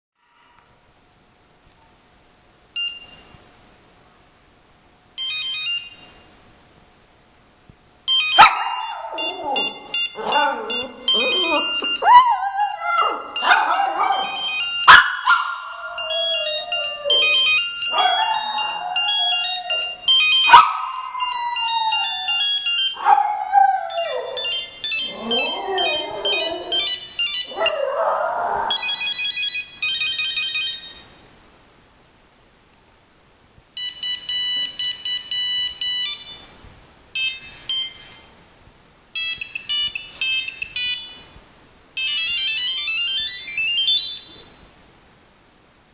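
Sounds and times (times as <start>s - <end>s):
phone ringtone melody: 2.8s - 3.3s, 5.2s - 6.2s, 8.1s - 28.0s, 28.7s - 31.2s, 33.8s - 36.5s, 37.2s - 38.3s, 39.2s - 41.4s, 42.0s - 44.6s
dog howling and whining: 8.4s - 29.2s.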